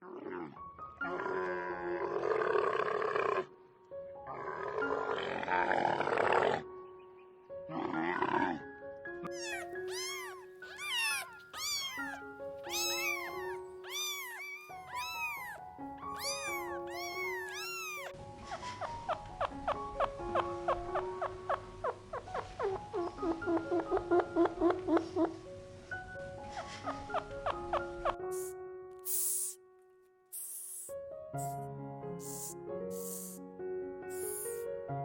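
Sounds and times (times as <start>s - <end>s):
background music: 0.0s - 35.0s
animal calls: 9.3s - 25.4s, 26.6s - 29.6s, 32.2s - 33.4s, 34.1s - 34.6s
rapid short chirps: 28.3s - 29.6s, 30.4s - 31.6s, 32.2s - 33.4s, 34.1s - 34.6s.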